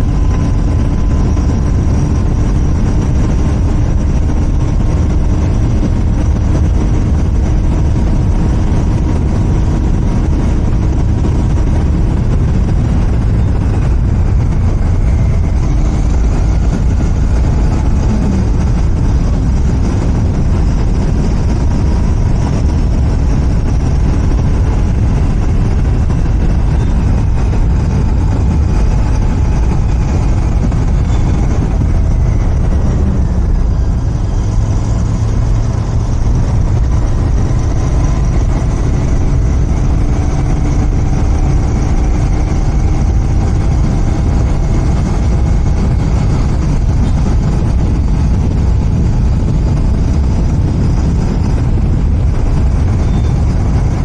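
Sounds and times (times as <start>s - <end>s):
motorcycle engine rumbling: 0.0s - 54.0s.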